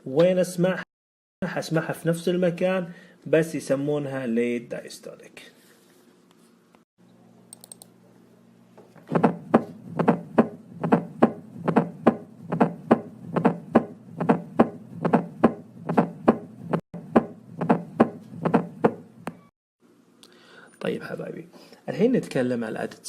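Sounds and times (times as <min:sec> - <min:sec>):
dull heart sound thuds: 0:09.1 - 0:19.0.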